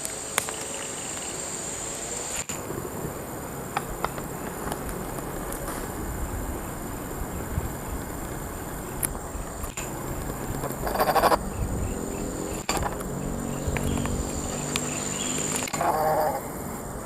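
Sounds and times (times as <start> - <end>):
insect buzzing: 0.0 - 17.0
animal calls: 3.8 - 17.0.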